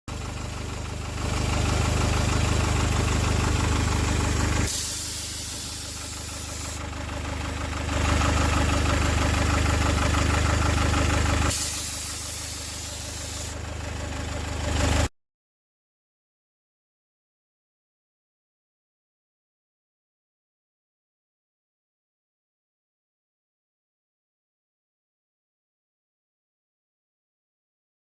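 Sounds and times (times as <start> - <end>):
diesel engine running: 0.1 - 15.1
high hiss: 4.7 - 6.8, 11.5 - 13.6.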